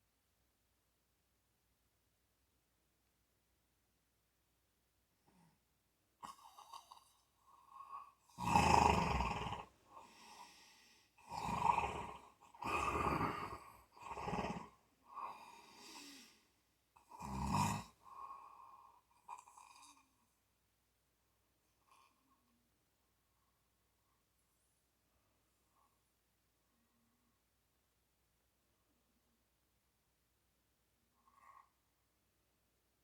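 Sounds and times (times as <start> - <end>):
person snoring: 6.2 - 16.4, 17.0 - 18.0.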